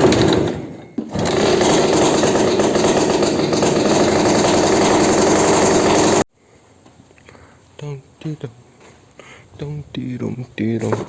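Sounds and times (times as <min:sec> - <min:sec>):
small two-stroke engine running: 0:00.0 - 0:06.2.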